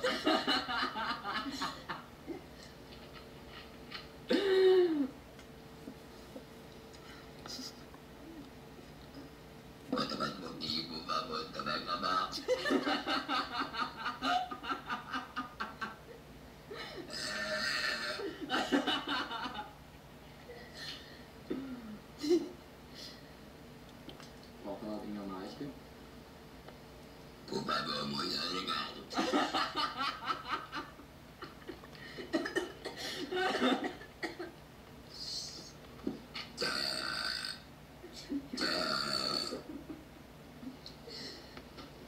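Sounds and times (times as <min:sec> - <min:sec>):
people laughing: 0:00.0 - 0:02.4, 0:11.8 - 0:16.1, 0:18.0 - 0:19.8, 0:29.1 - 0:34.4.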